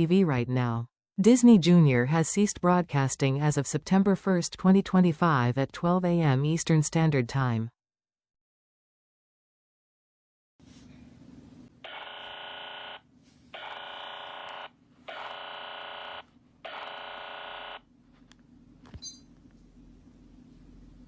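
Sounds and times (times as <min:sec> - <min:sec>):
buzzing electronic tones: 0:11.9 - 0:13.0, 0:13.6 - 0:17.8.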